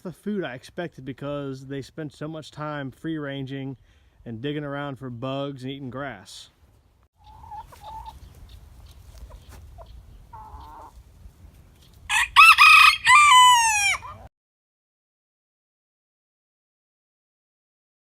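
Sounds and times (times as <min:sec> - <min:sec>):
hens clucking softly: 0:07.2 - 0:11.0
rooster crowing: 0:12.1 - 0:14.3.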